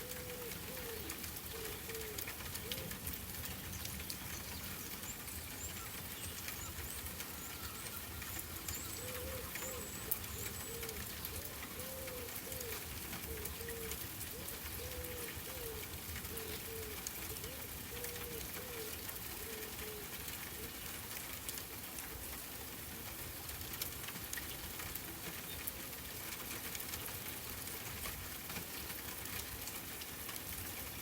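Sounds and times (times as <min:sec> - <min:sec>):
doves cooing: 0:00.0 - 0:03.5, 0:04.6 - 0:21.0
background hiss with ticking: 0:00.0 - 0:31.0
small bird chirping: 0:03.6 - 0:12.7.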